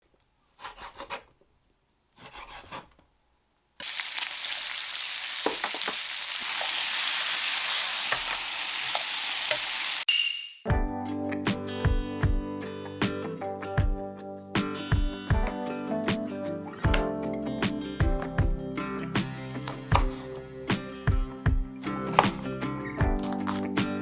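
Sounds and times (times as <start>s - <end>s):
food sizzling in a frying pan: 3.8s - 10.1s.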